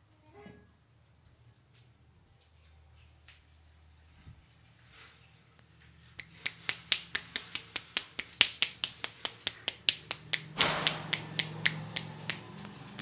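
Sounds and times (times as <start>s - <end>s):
hands rubbing rustle: 4.4s - 13.0s
hands clicking snaps: 6.2s - 13.0s.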